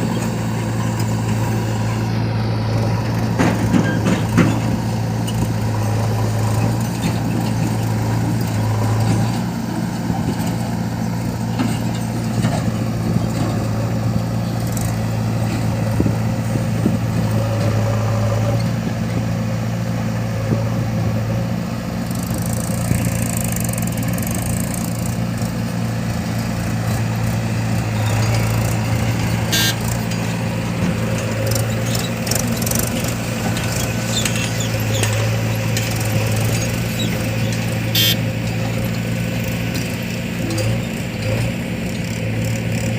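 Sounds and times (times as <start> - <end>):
diesel engine running: 0.0 - 42.9.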